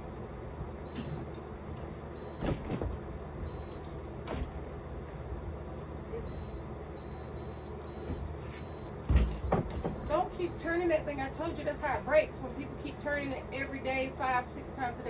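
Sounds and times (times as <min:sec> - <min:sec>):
air conditioner humming: 0:00.0 - 0:15.0.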